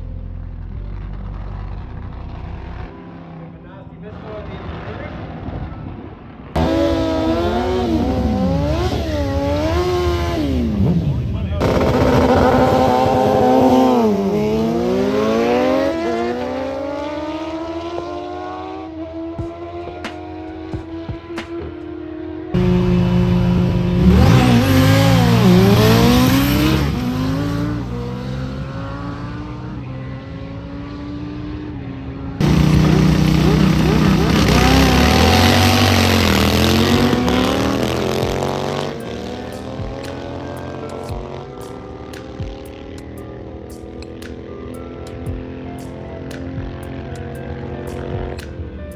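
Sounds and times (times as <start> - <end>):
race car engine revving: 6.6 - 21.1, 22.5 - 44.9.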